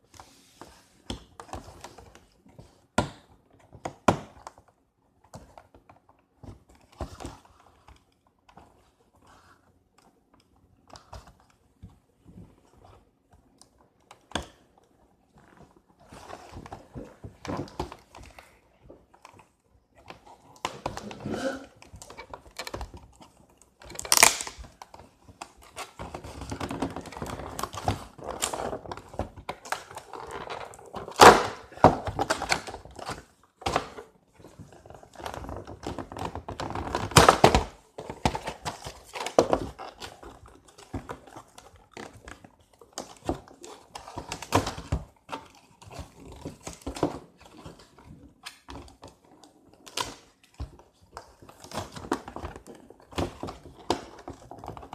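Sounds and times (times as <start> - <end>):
package being pried open: 23.9 - 24.6.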